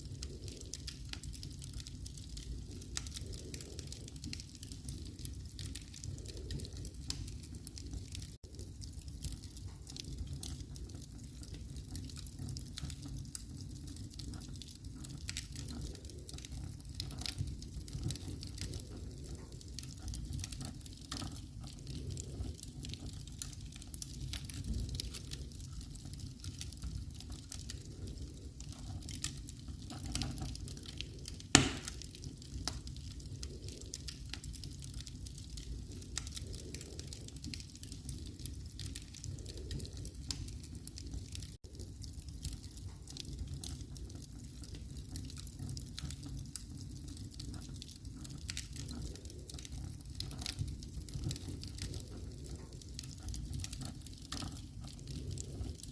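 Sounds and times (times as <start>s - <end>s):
wood fire crackling and popping: 0.0s - 55.9s.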